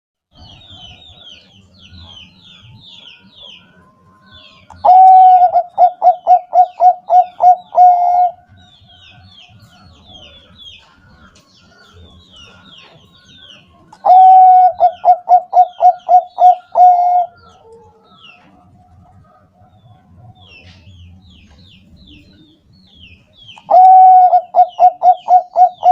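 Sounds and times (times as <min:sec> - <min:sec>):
small birds chirping: 0:00.3 - 0:25.9
dove cooing: 0:04.4 - 0:21.0, 0:23.5 - 0:25.9.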